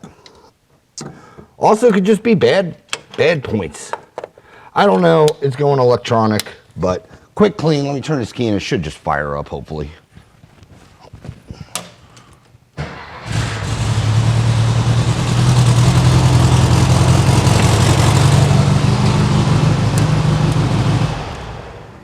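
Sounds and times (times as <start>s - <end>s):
engine starter turning: 12.8s - 21.9s
car engine running: 13.3s - 22.0s.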